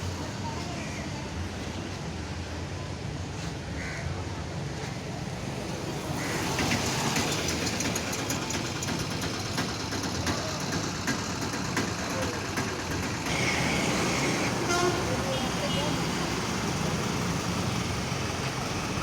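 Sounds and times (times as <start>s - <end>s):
motor vehicle engine rumble: 4.4s - 19.0s.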